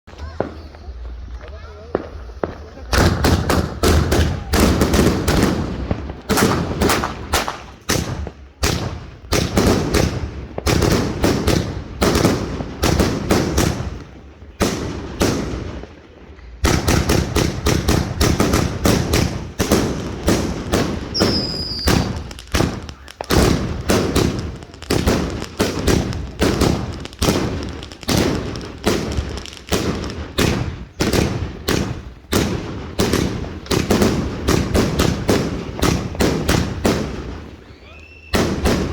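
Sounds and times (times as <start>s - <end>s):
firework bangs and bursts: 0.1s - 38.9s.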